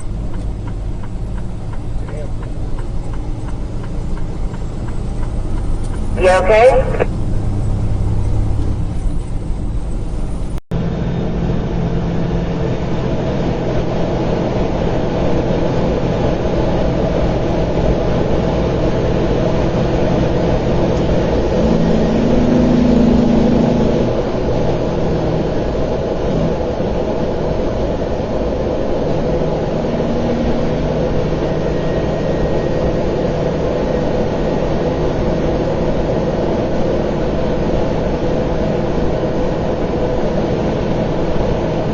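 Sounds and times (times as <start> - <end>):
road noise: 0.0 - 41.9
vehicle engine drone: 0.0 - 41.9
low steady tone: 21.0 - 25.4.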